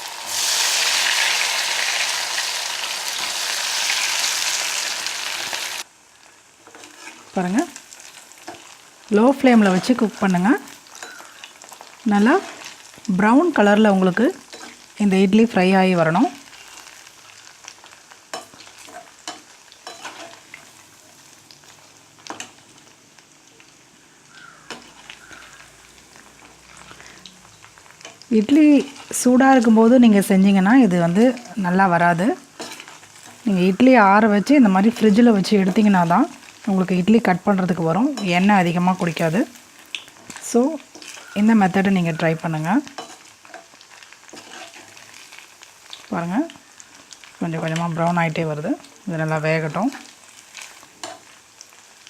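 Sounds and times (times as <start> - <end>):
food sizzling in hot oil: 0.0 - 52.0
spatula scraping a pan: 6.6 - 7.3, 18.3 - 20.5, 28.8 - 29.2, 32.6 - 33.4, 40.9 - 41.3, 42.8 - 45.2.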